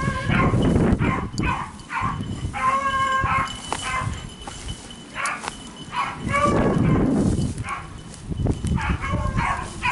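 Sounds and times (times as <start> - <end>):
dogs baying: 0.0 - 4.3, 5.1 - 8.0, 8.8 - 9.9.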